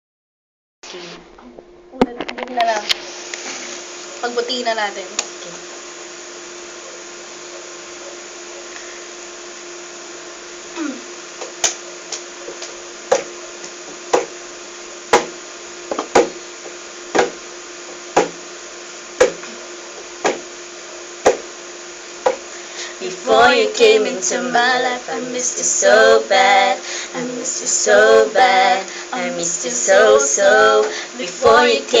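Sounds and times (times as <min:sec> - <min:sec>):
background hiss: 0:00.8 - 0:32.0
low hum: 0:00.8 - 0:32.0
sharp knocks keeping time: 0:15.1 - 0:16.4, 0:17.1 - 0:17.4, 0:18.2 - 0:18.4, 0:19.2 - 0:19.6, 0:21.2 - 0:21.5, 0:22.2 - 0:22.5.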